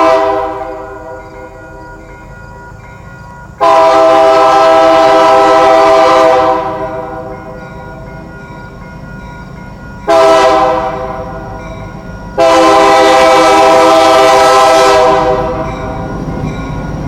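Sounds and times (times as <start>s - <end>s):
locomotive air horn: 0.0s - 1.2s, 3.6s - 7.4s, 10.1s - 11.6s, 12.4s - 16.0s
train rumbling: 0.0s - 17.0s.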